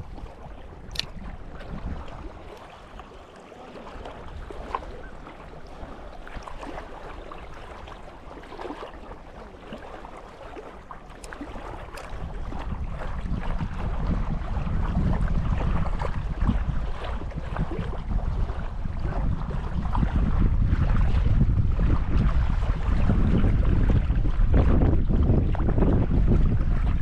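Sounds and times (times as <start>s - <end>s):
lapping water: 0.0s - 21.4s
wind buffeting microphone: 0.0s - 27.0s.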